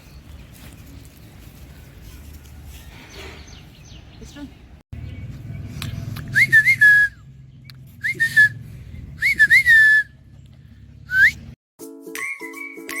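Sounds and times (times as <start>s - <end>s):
person whistling calls: 6.3s - 7.3s, 8.0s - 8.6s, 9.2s - 10.2s, 11.1s - 11.5s.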